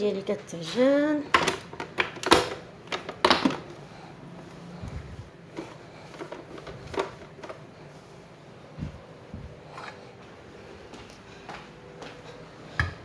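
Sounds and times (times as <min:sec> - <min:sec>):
faint steady hum: 0:00.0 - 0:13.0
kitchen items knocking and clattering: 0:01.3 - 0:03.7.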